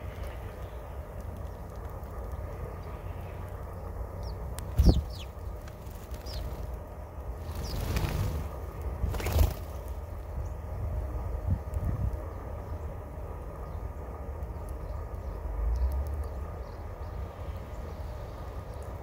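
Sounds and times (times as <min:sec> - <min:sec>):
steady low rumble: 0:00.0 - 0:19.0
high bird chirps: 0:04.2 - 0:05.5, 0:06.1 - 0:06.6
wingbeats rushing: 0:04.2 - 0:10.1.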